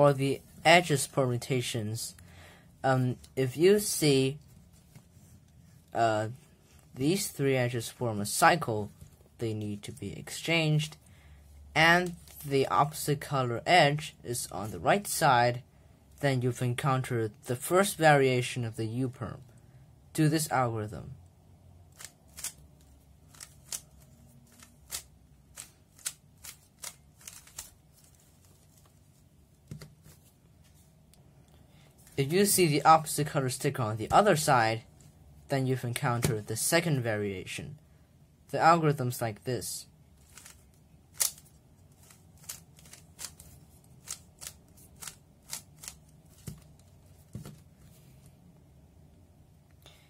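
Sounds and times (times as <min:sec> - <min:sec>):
puzzle cube layers clacking: 0:23.3 - 0:28.4, 0:40.2 - 0:47.7.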